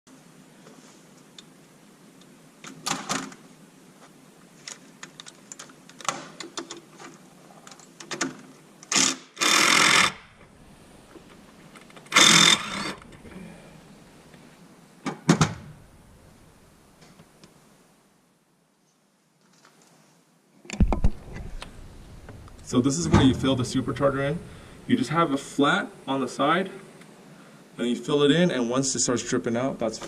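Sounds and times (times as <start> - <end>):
power driver running: 9.4 - 13.6.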